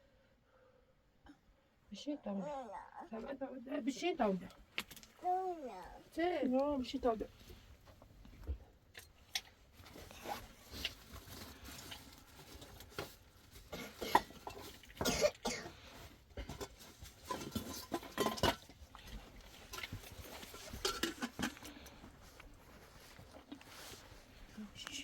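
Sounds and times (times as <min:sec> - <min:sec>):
person coughing: 0:15.0 - 0:15.7
knocks and handling noises: 0:15.7 - 0:24.6.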